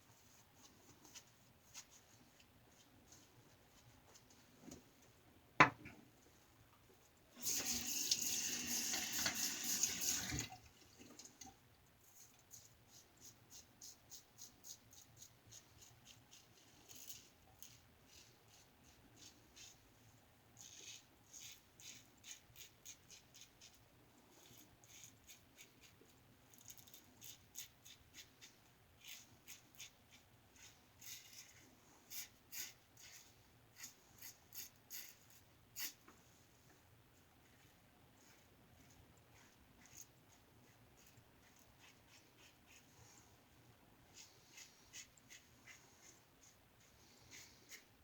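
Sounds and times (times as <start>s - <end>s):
sink tap running: 7.4s - 10.6s.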